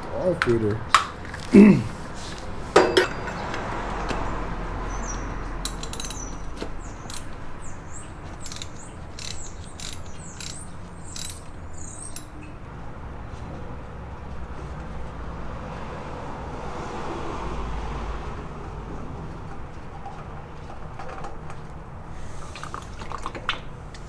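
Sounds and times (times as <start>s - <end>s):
ratchet clicking: 5.6s - 7.4s, 8.2s - 12.4s.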